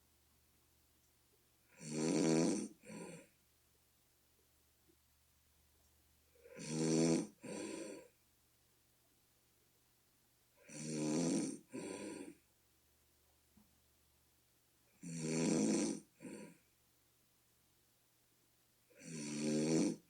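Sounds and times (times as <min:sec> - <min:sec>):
person snoring deeply: 0:01.8 - 0:03.2, 0:06.4 - 0:08.1, 0:10.6 - 0:12.4, 0:19.0 - 0:20.0.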